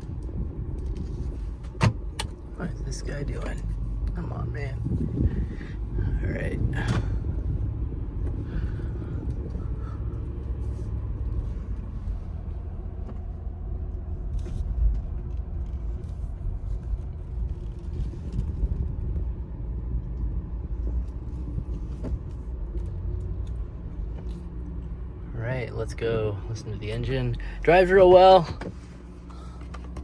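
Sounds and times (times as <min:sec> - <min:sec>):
car interior road rumble: 0:00.0 - 0:30.0
car bump: 0:01.6 - 0:02.4.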